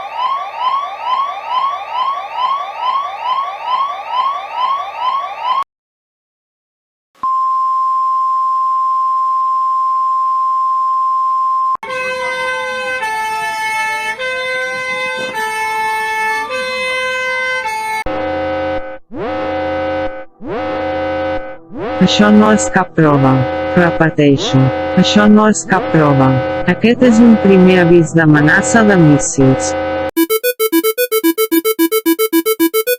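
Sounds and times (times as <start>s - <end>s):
chord of alarm tones: 17.4s - 32.9s
steady high beep: 30.2s - 32.9s.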